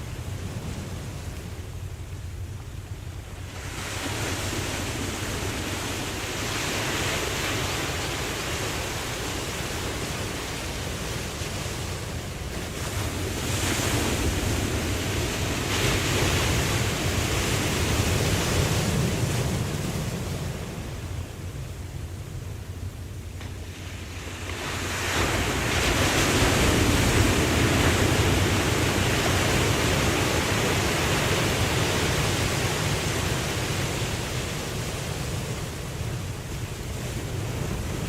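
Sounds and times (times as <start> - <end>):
low rumble of wind: 0.0 - 38.0
ocean waves washing in: 0.0 - 38.0.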